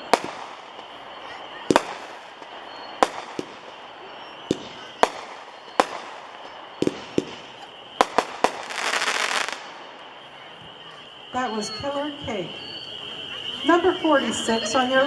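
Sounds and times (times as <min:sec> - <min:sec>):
firework cake shot reports: 0:00.0 - 0:13.6.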